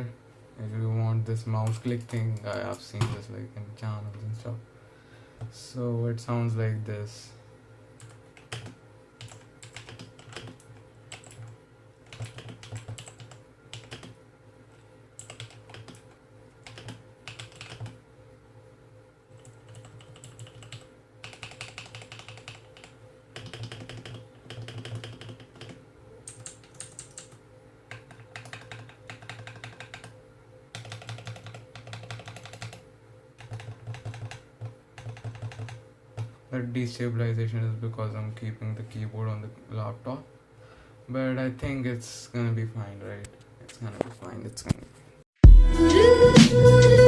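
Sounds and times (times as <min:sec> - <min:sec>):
steady low hum: 0:00.0 - 0:47.0
mechanical keyboard typing: 0:08.0 - 0:11.5, 0:12.1 - 0:14.1, 0:15.2 - 0:18.0, 0:19.4 - 0:30.1, 0:30.7 - 0:32.8, 0:33.4 - 0:36.3.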